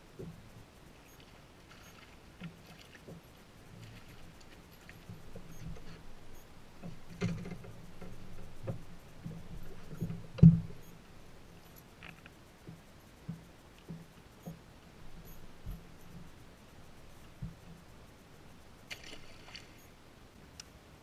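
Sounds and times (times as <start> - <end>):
faint low hum: 0.0 - 21.0
knocks and thumps: 6.8 - 10.9.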